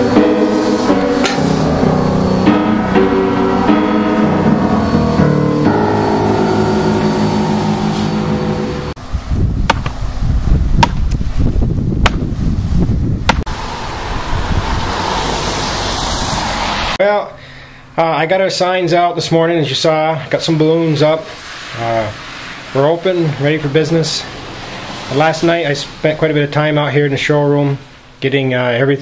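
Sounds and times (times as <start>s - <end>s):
background music: 0.0s - 9.0s
rising hiss: 0.0s - 10.4s, 13.4s - 17.0s, 19.8s - 28.2s.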